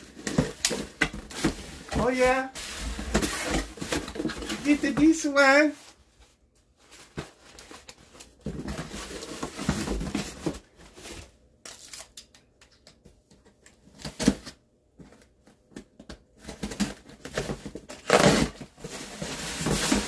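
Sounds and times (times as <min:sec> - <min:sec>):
packaging rustling and tearing: 0:16.4 - 0:20.0.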